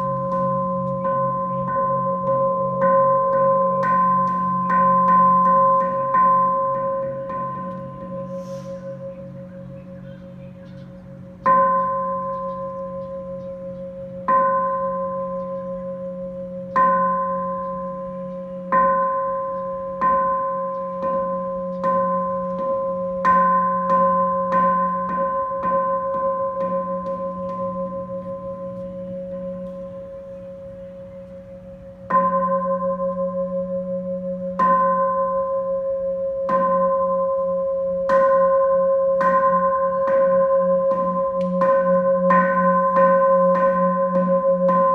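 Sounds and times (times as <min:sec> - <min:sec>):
temple bell ringing: 0:00.0 - 0:44.9.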